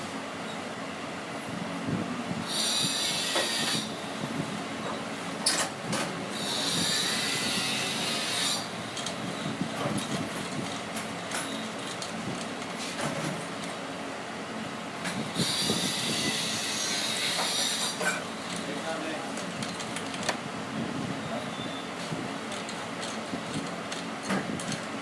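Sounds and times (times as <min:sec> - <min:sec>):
high squealing hisses: 0:02.5 - 0:04.0, 0:06.3 - 0:08.7, 0:15.4 - 0:18.2.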